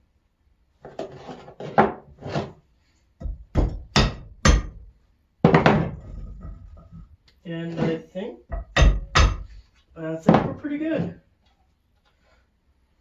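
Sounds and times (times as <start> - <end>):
hammer striking metal vice: 8.5 - 9.5.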